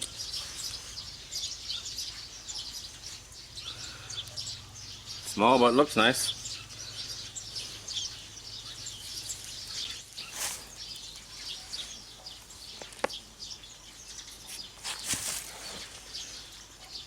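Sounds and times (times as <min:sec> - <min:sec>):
small birds chirping: 0:00.0 - 0:17.0
short rustling noises: 0:10.2 - 0:11.0, 0:14.8 - 0:16.1.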